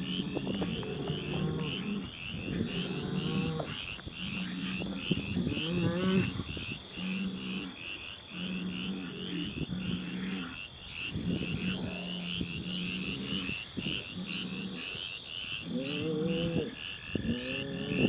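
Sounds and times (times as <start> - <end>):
high frog call: 0.0 - 18.0
low frog croaking: 0.0 - 18.0.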